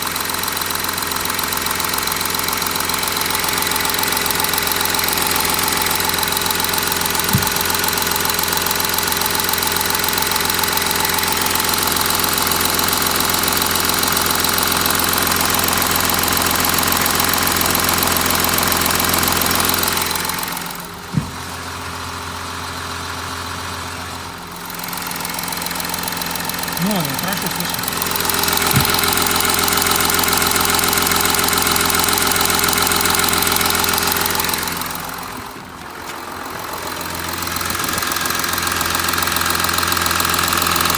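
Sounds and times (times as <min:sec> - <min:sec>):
diesel engine running: 0:00.0 - 0:40.9
brief knocks: 0:21.1 - 0:21.4.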